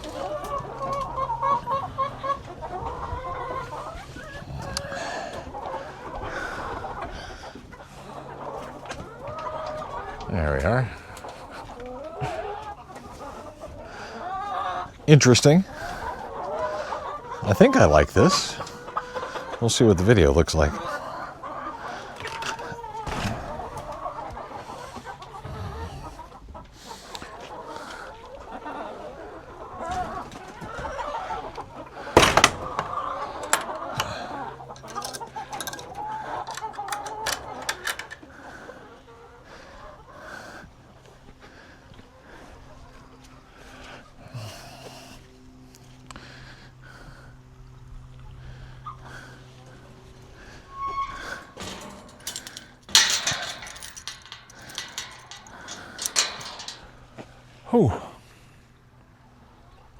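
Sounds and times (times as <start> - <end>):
hens clucking: 0.0 - 43.4
loud scraping rattle: 32.2 - 34.1, 50.4 - 57.2
hard objects clattering: 51.5 - 57.2.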